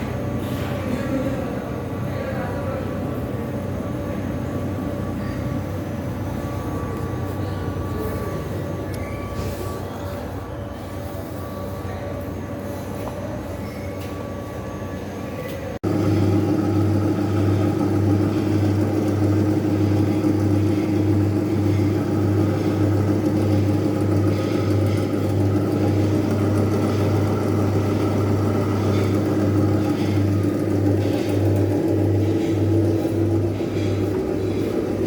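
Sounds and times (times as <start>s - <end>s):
pulsing electric motor hum: 15.8s - 35.0s.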